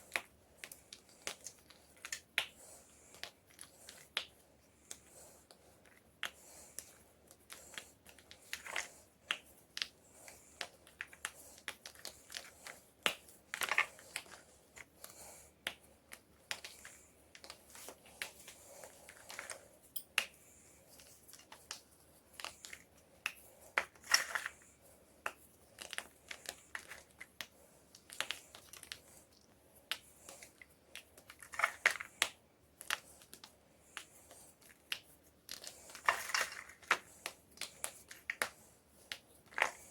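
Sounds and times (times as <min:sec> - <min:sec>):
chalk crunching and crackling: 0:21.0 - 0:39.9.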